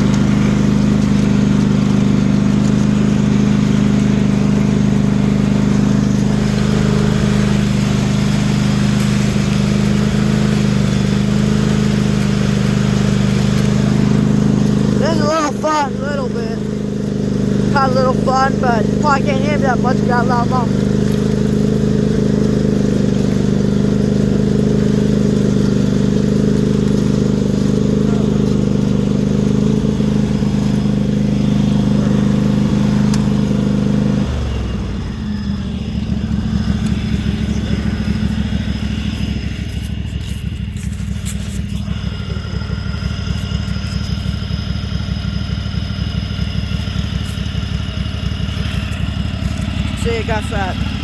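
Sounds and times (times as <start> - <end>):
lawn mower engine running loud: 0.0 - 51.0.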